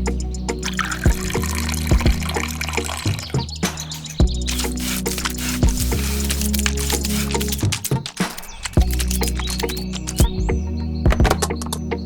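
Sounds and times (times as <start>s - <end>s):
background music with bass: 0.0s - 12.0s
sharp clicks and taps: 3.3s - 10.4s.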